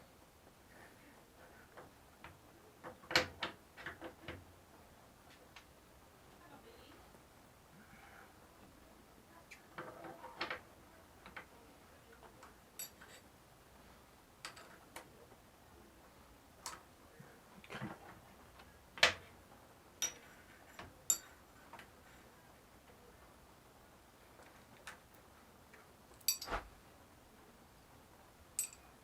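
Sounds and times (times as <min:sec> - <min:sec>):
metal tools clicking and clinking: 0:12.8 - 0:13.2, 0:14.4 - 0:14.8, 0:21.1 - 0:21.4, 0:26.2 - 0:26.6, 0:28.6 - 0:29.0.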